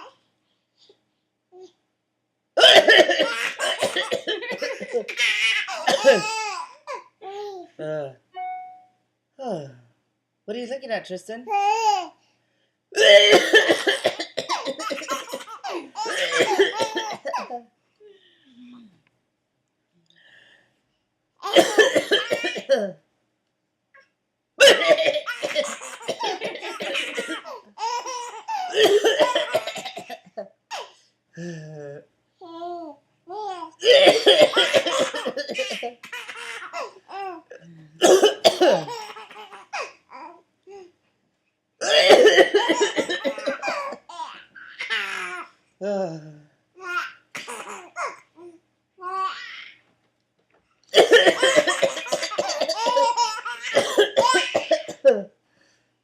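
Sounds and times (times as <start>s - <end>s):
man coughing: 2.6s - 5.2s, 5.8s - 6.5s, 13.0s - 17.6s, 21.5s - 23.0s, 24.6s - 27.4s, 28.6s - 30.4s, 33.8s - 36.0s, 37.5s - 39.2s, 41.8s - 44.0s, 50.9s - 55.3s
baby laughing: 3.2s - 7.6s, 24.6s - 29.6s, 34.5s - 37.4s, 38.7s - 40.3s, 51.3s - 54.6s.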